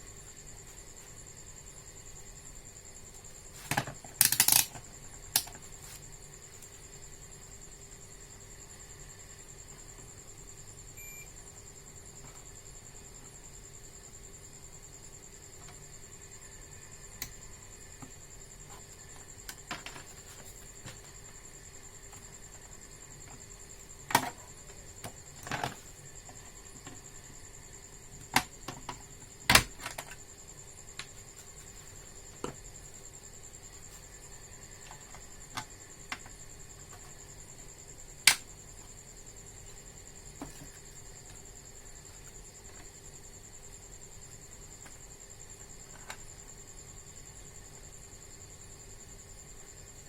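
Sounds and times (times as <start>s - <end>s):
faint high-pitched whine: 0.0s - 50.0s
hand tools clicking and tapping: 4.2s - 4.7s.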